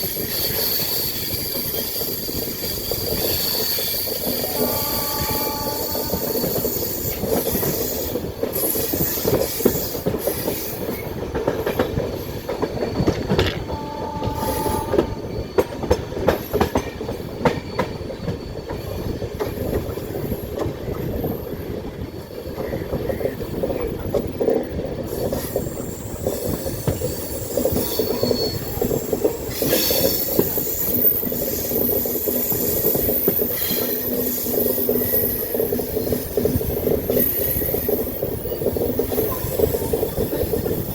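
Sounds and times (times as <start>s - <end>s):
train wheels clattering over rail joints: 0.0s - 40.9s
train wheels squealing: 0.0s - 40.9s.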